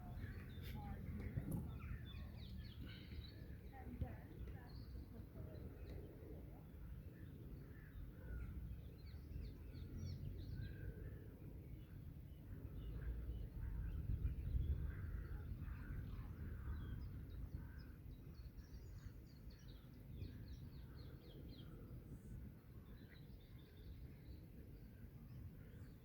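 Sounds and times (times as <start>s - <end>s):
birds chirping: 0.0s - 6.2s.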